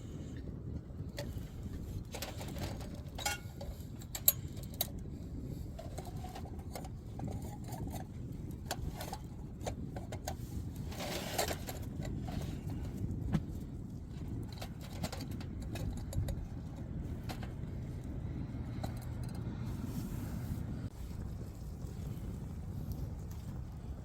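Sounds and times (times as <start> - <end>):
wood fire crackling: 6.5 - 18.6.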